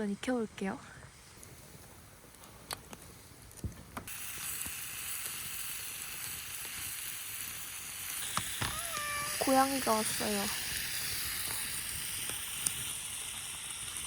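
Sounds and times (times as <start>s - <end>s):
pork sizzling in a frying pan: 4.1s - 14.0s.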